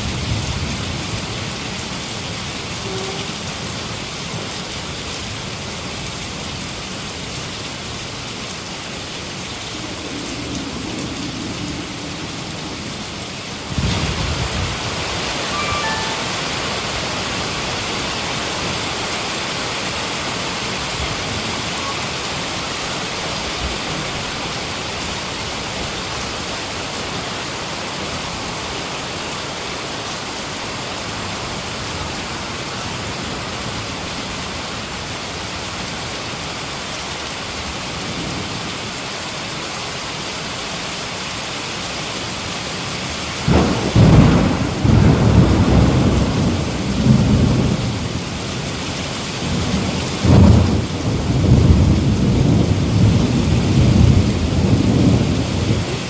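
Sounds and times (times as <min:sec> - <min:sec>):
heavy rain: 0:00.0 - 0:56.0
thunder rumbling: 0:09.6 - 0:16.6, 0:43.5 - 0:48.2, 0:49.4 - 0:56.0.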